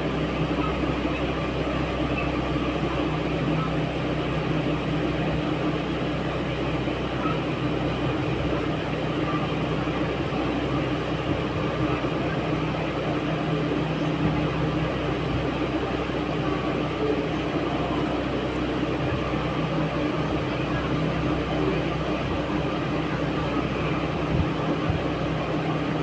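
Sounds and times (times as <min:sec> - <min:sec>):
steady mechanical hum: 0:00.0 - 0:26.0.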